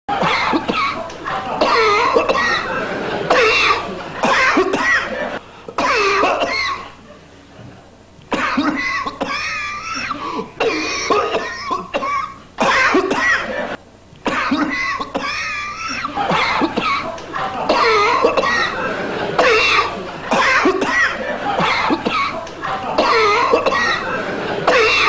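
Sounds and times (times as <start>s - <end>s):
person coughing: 0.1s - 2.7s, 3.3s - 7.0s, 8.3s - 18.8s, 19.4s - 25.0s.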